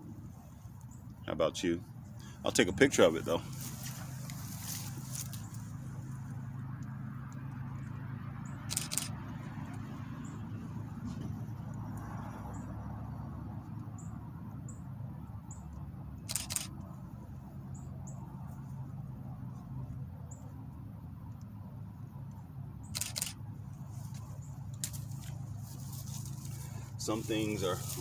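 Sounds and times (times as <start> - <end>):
low background hum: 0.0 - 28.0
camera shutter clicks: 8.7 - 9.2, 16.3 - 16.7, 22.9 - 23.4.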